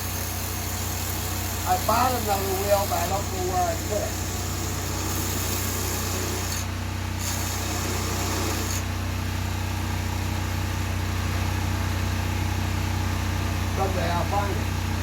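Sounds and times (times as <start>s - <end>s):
grinding wheel hissing on metal: 0.0s - 8.9s
grinder motor hum: 0.0s - 9.1s.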